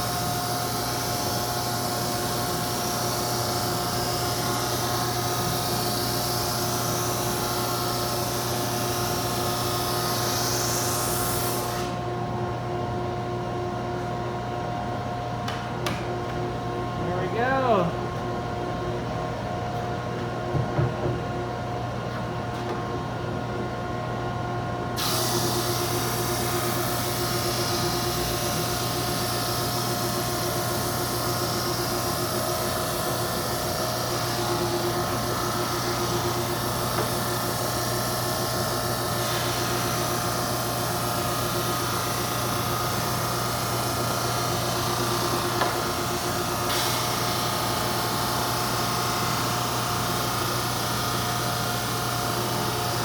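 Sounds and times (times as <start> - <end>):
hiss of belt sanding wood: 0.0 - 12.0, 25.0 - 53.0.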